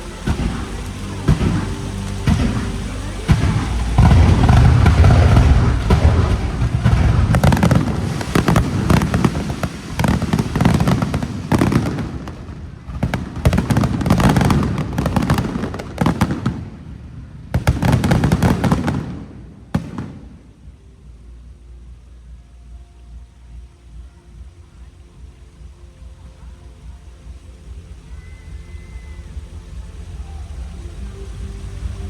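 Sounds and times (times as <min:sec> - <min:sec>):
fireworks booming: 0:00.0 - 0:21.1
fireworks crackling: 0:00.0 - 0:32.0.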